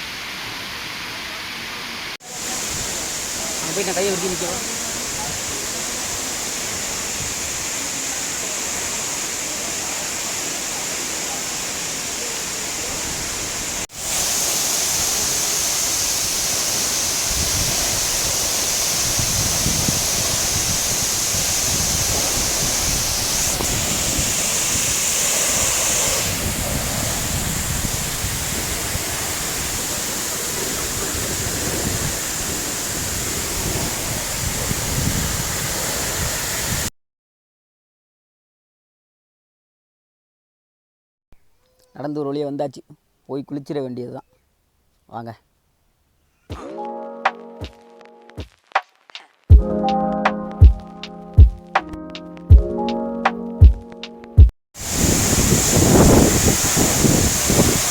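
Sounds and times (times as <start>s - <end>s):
waterfall rushing: 0.0s - 36.9s, 54.8s - 57.9s.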